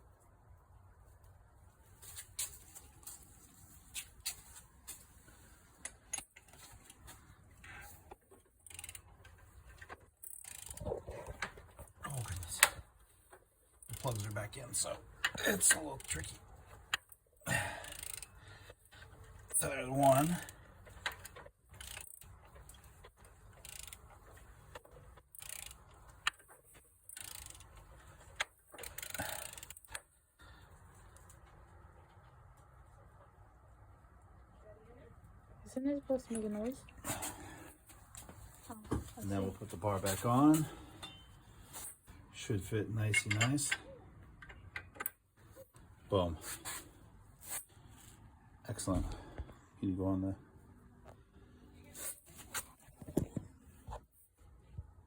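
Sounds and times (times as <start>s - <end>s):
wrench clicking on engine: 17.8s - 18.4s, 23.6s - 24.1s, 25.3s - 25.9s, 27.1s - 27.8s.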